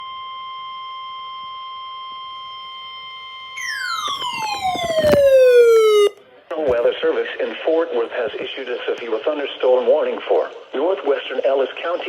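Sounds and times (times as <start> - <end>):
clicks: 3.6 - 6.2
steady high-pitched alarm tone: 3.6 - 6.2
tone sliding downward: 3.6 - 6.2.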